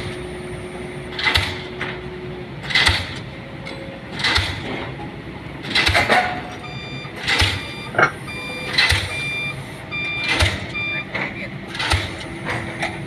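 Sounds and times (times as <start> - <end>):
high broken beeping: 6.6 - 11.5
pile-driving hammer striking: 7.2 - 8.1, 10.3 - 10.7.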